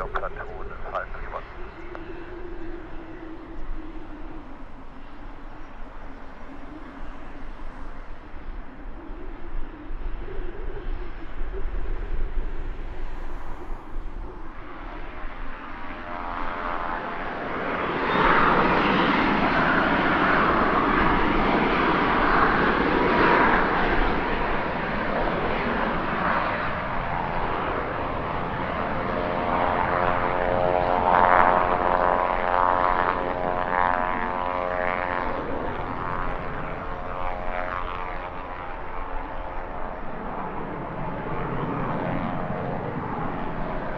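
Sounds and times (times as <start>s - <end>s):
jet engine roar: 0.0s - 43.9s.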